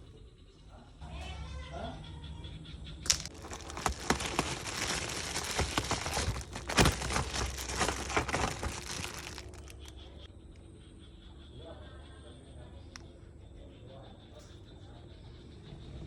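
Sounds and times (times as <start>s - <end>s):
air filter crinkling and rustling: 3.1s - 10.0s.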